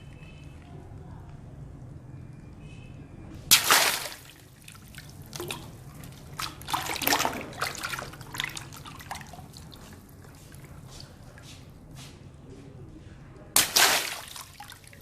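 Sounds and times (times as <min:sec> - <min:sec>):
water splashing and dripping: 0:03.5 - 0:11.6, 0:13.6 - 0:15.0.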